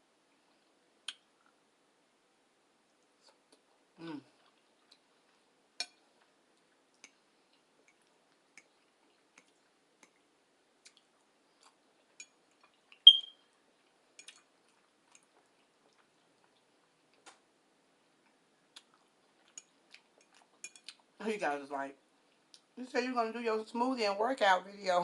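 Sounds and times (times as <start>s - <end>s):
chewing and mouth noises: 2.9s - 13.1s, 13.8s - 17.4s, 18.0s - 21.2s
sharp ringing clink: 13.1s - 13.3s.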